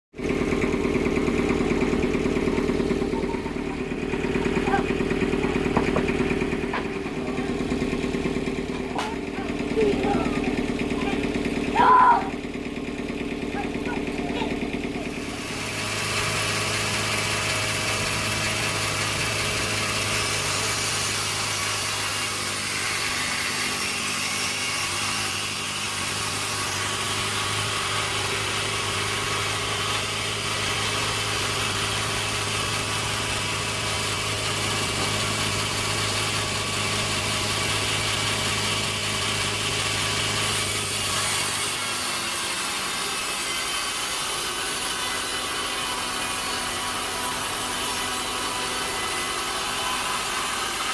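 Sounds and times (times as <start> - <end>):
saw cutting through wood: 0.1 - 50.9
machinery engine hum: 0.2 - 21.6.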